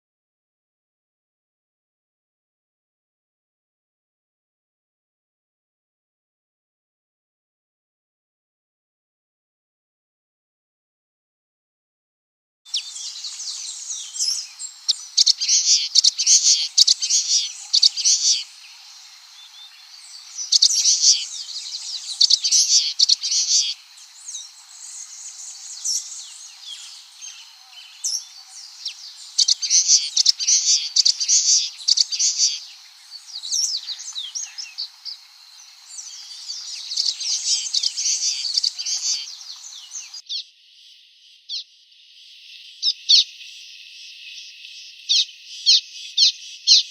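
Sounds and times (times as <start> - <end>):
bird rapid high chirping: 12.7 - 35.2, 35.8 - 40.4.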